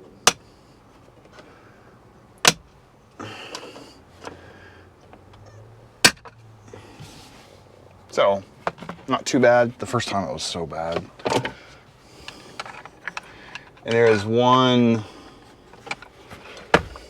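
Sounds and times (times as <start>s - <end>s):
plastic scraping: 15.7s - 17.0s.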